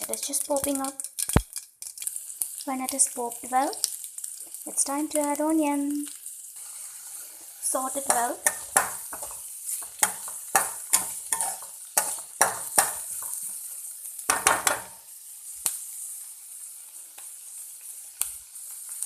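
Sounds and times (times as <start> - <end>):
onion sizzling in hot oil: 0.0 - 19.0
spatula scraping and knocking pan: 7.2 - 13.6, 14.3 - 15.0.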